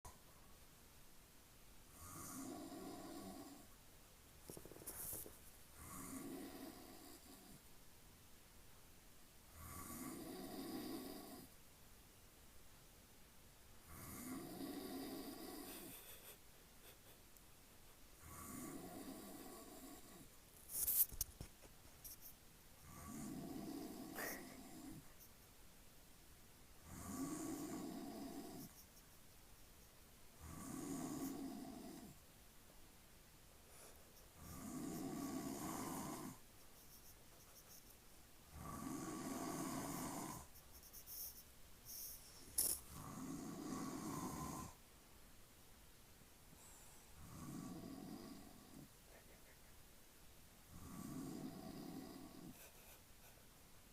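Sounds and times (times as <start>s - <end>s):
man snoring: 2.0s - 3.7s, 5.8s - 7.6s, 9.5s - 11.5s, 13.9s - 15.9s, 18.2s - 20.2s, 22.8s - 25.0s, 26.8s - 28.7s, 30.4s - 32.2s, 34.4s - 36.4s, 38.5s - 40.5s, 42.9s - 44.8s, 47.2s - 48.9s, 50.7s - 52.6s.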